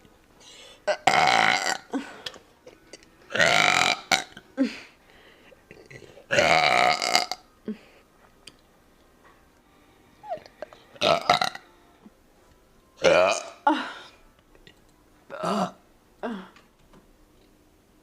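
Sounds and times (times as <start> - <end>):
person burping loudly: 0.8 - 2.4, 3.0 - 4.5, 5.7 - 7.5, 10.4 - 11.6, 13.0 - 13.8, 15.3 - 16.6.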